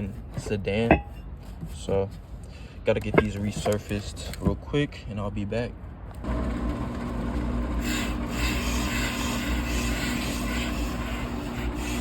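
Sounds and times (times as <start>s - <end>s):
cutting bit scraping brake disc: 2.9s - 4.5s, 7.8s - 12.0s
motor hum: 6.2s - 12.0s.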